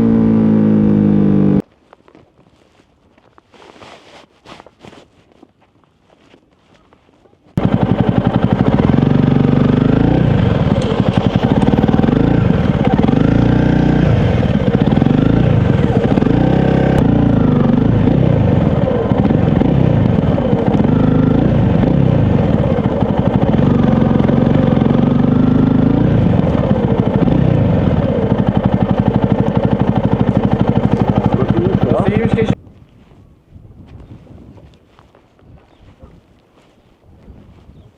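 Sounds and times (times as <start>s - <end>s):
motorcycle engine revving: 0.0s - 1.6s, 7.6s - 32.6s.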